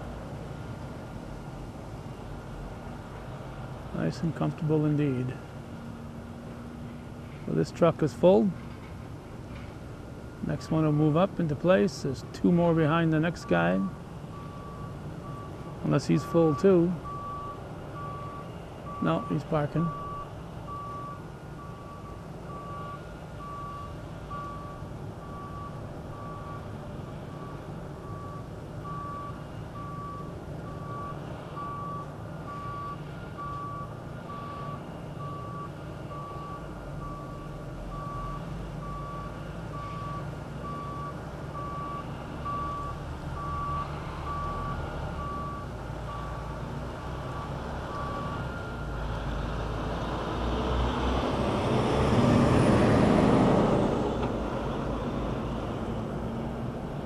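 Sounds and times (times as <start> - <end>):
truck reversing alarm beeping: 10.2 - 49.6.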